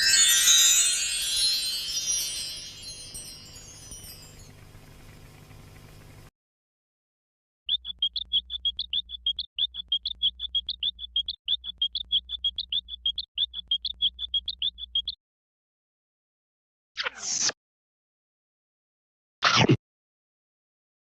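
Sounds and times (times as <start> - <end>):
rapid high-pitched cartoon chirping: 7.7 - 15.2.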